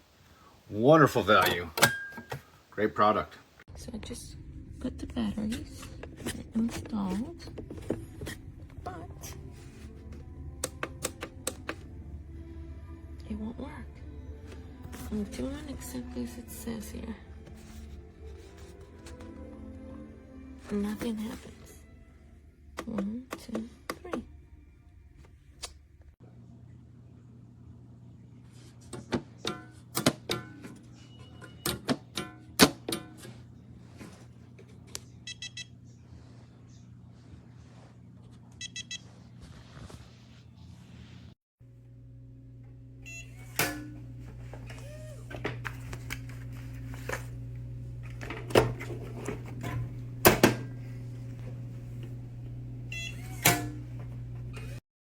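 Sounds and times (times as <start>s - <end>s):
metallic clicks and clunks of safe: 1.4s - 2.5s
steady low hum: 3.4s - 28.8s, 40.3s - 54.8s
short electronic beeps: 35.3s - 35.7s.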